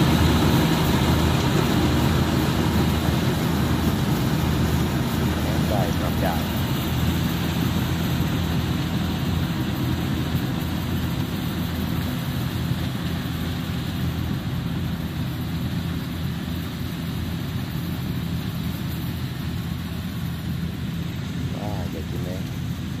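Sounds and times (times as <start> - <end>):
combine harvester engine running: 0.0 - 23.0.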